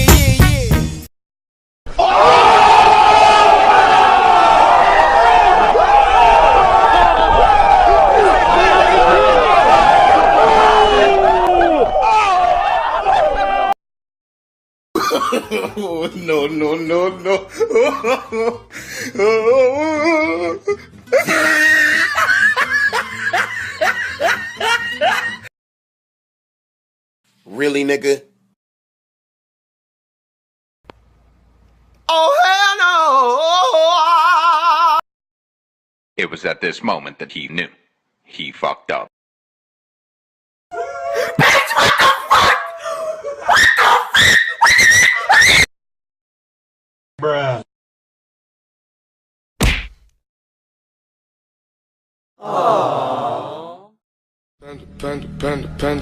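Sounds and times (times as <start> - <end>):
music: 0.0 - 1.1, 19.8 - 25.5, 54.6 - 56.0
exaggerated laughter: 15.0 - 19.3, 20.7 - 25.5, 40.7 - 45.6
animal yelping and screaming: 40.7 - 45.7.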